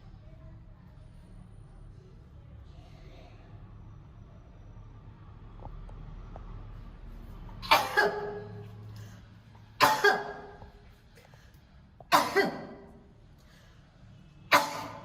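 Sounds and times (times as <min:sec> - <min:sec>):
woman coughing: 0:07.6 - 0:08.6, 0:09.8 - 0:10.6, 0:12.1 - 0:12.9, 0:14.5 - 0:15.0.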